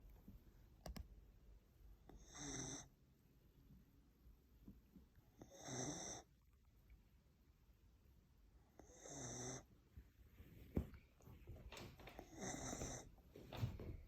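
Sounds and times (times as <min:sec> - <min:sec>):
dog snoring: 0:02.2 - 0:02.9, 0:05.4 - 0:06.3, 0:08.8 - 0:09.7, 0:12.2 - 0:13.1.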